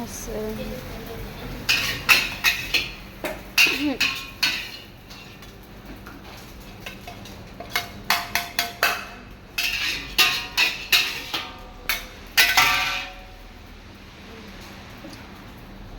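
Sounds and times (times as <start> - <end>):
metal spatula clanking on wok: 1.6 - 13.4.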